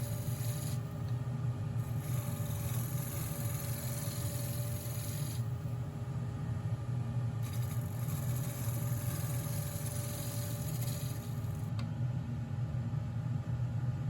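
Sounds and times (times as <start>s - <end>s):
wood lathe humming: 0.0s - 0.8s, 1.9s - 5.5s, 7.4s - 11.6s.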